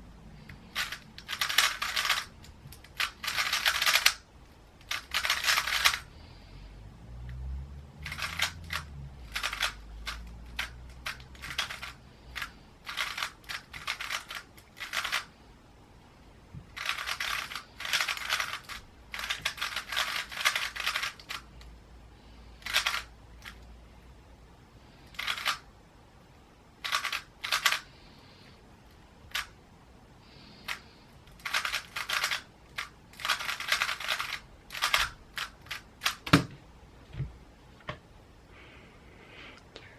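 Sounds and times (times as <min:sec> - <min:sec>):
puzzle cube plastic clicking: 0:00.5 - 0:04.2, 0:04.8 - 0:06.0, 0:08.0 - 0:15.3, 0:16.7 - 0:21.7, 0:22.6 - 0:23.7, 0:25.1 - 0:25.6, 0:26.8 - 0:27.8, 0:30.6 - 0:36.4.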